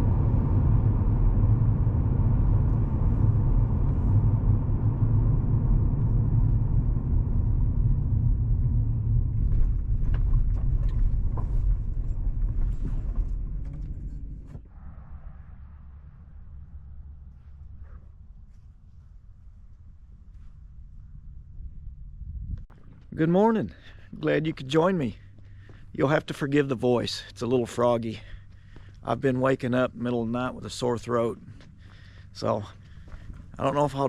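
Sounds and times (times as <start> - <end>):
car rumbling: 0.0 - 14.7.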